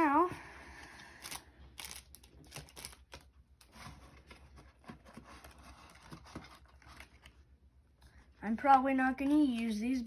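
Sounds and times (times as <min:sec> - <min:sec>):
trading cards rustling and clicking: 0:01.2 - 0:07.5.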